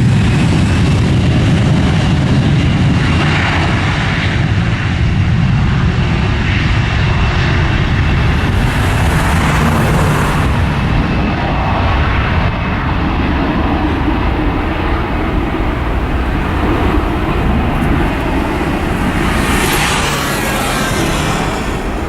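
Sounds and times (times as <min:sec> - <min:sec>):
jet engines rumbling: 0:00.0 - 0:22.0
rising hiss: 0:13.7 - 0:22.0.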